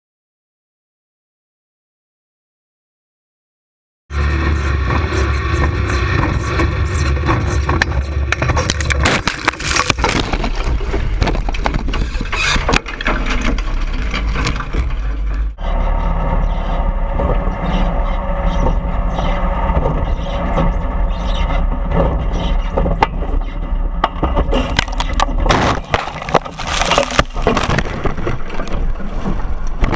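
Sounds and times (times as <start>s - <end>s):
racing engine running loud: 4.1s - 9.1s
crunching and scraping impacts: 4.1s - 29.9s.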